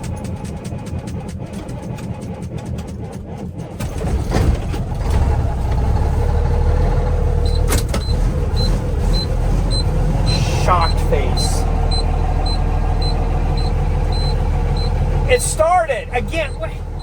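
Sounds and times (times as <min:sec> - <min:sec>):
starter cranking diesel engine: 0:00.0 - 0:17.0
diesel engine idling: 0:04.8 - 0:17.0
high warning beep: 0:07.4 - 0:17.0.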